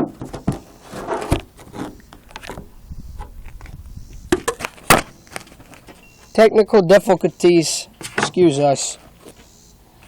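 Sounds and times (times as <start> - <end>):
handling noise rustling and clicks: 4.4 - 6.1.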